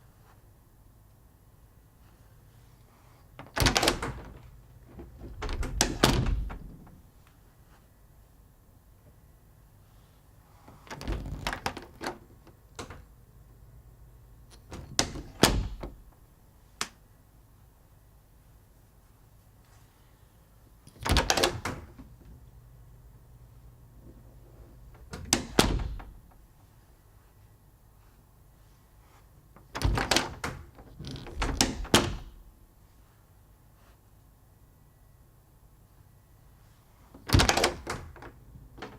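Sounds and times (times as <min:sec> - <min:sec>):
door shutting with thud: 0:03.4 - 0:07.1, 0:14.6 - 0:16.1, 0:21.0 - 0:22.1, 0:24.9 - 0:26.4, 0:29.7 - 0:32.5, 0:37.2 - 0:38.9
door handle and latch clicks: 0:37.3 - 0:38.9.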